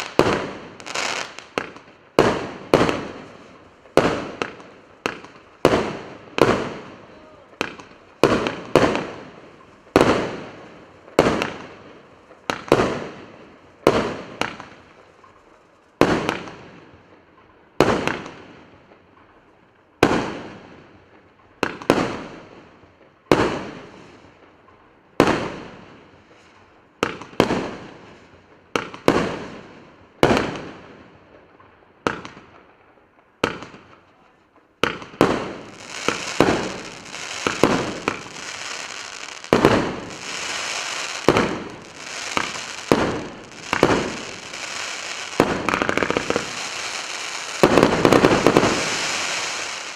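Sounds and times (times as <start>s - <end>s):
firework bangs with echo: 0.0s - 15.0s, 16.0s - 16.8s, 17.8s - 18.6s, 23.3s - 24.0s, 27.0s - 28.0s, 28.8s - 30.9s, 32.0s - 32.6s, 33.4s - 34.0s, 34.8s - 49.9s
firework hissing crackle: 0.0s - 15.3s, 34.8s - 49.9s.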